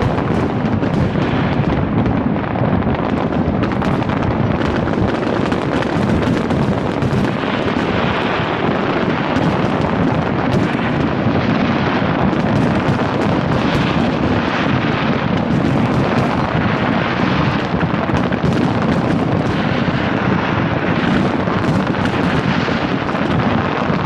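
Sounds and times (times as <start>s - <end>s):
fireworks booming and crackling: 0.0s - 24.0s.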